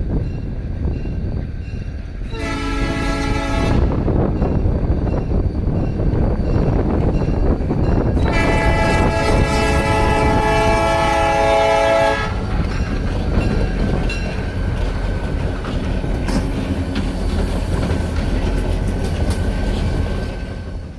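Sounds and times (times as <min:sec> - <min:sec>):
rumble of passing train: 0:00.0 - 0:20.9
train horn chord: 0:02.3 - 0:04.0, 0:08.2 - 0:12.4
wheels clicking over rail joints: 0:12.3 - 0:20.9.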